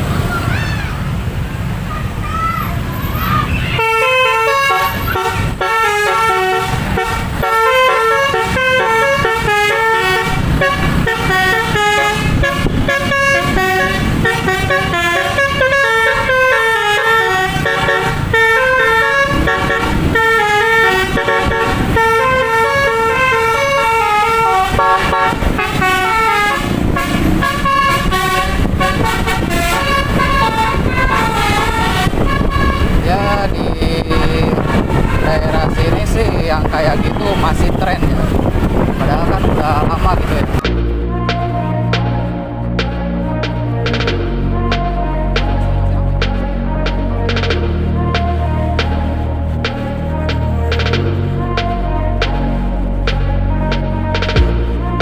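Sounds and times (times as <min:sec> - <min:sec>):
bus musical horn melody: 0:03.2 - 0:36.4, 0:40.5 - 0:55.0
low rumble: 0:40.2 - 0:55.0.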